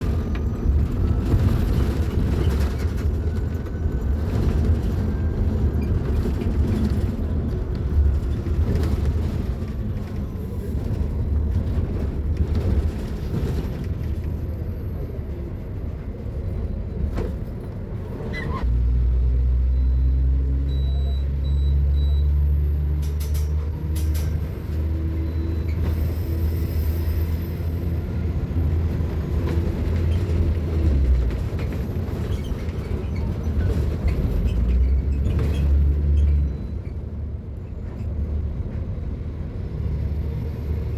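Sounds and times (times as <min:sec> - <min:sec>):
bus rough rumble: 0:00.0 - 0:40.9
bus steady low hum: 0:00.0 - 0:40.9
high beeps: 0:19.7 - 0:22.3.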